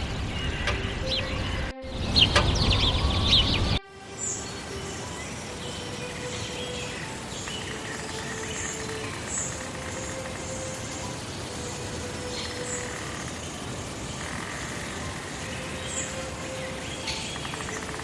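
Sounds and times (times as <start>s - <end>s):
birds chirping: 0.0s - 18.0s
outdoor hiss: 0.0s - 18.0s.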